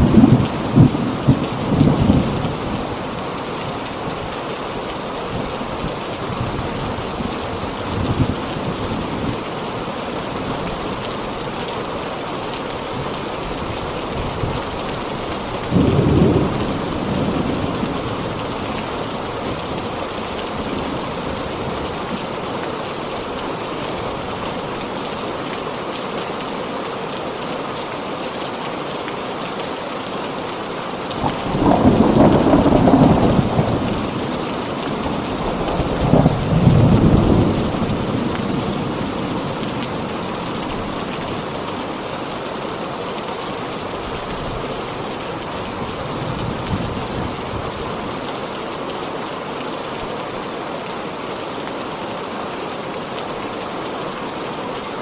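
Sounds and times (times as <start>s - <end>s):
thunder rumbling: 0.0s - 2.9s, 15.7s - 18.6s, 31.2s - 41.6s
heavy rain: 0.0s - 55.0s.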